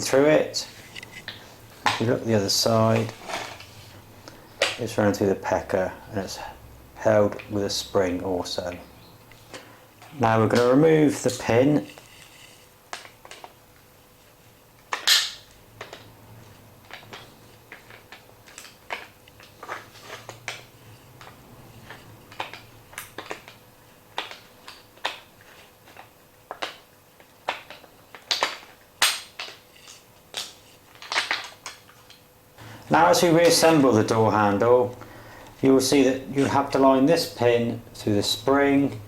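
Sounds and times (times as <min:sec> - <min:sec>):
small parts clicking and knocking: 0:16.8 - 0:32.2.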